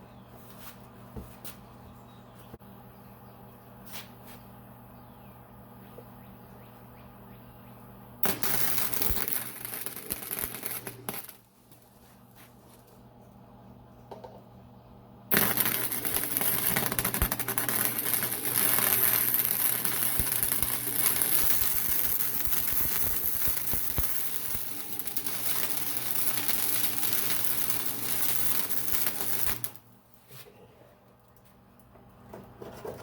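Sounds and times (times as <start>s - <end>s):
welder arc crackling: 8.2s - 11.9s, 15.3s - 29.8s.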